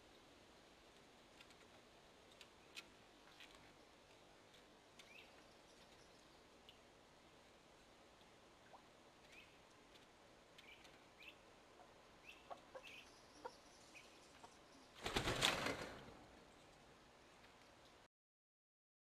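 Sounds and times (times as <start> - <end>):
chickens clucking: 10.6 - 14.6.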